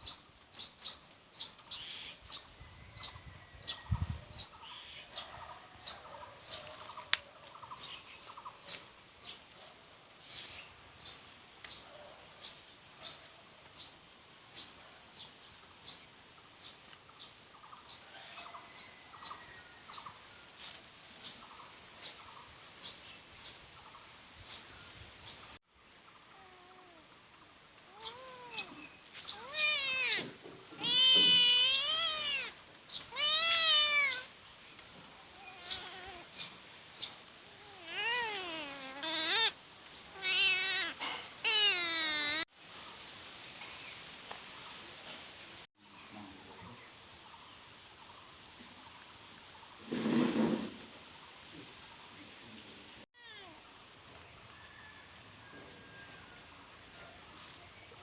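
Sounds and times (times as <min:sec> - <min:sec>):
kitten meowing: 0:27.9 - 0:34.3, 0:35.3 - 0:36.5, 0:37.5 - 0:42.4, 0:53.2 - 0:53.6.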